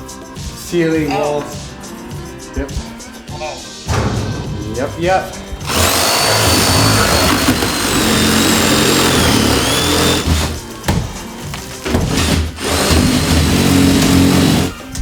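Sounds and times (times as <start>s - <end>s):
background music: 0.0s - 15.0s
power tool running: 5.3s - 15.0s.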